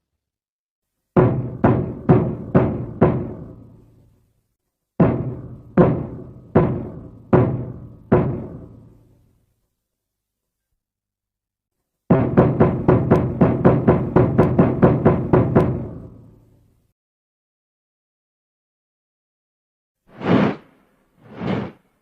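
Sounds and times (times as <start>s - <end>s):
deep drum-like chest thumps: 1.2s - 3.5s, 5.0s - 8.8s, 12.1s - 15.5s.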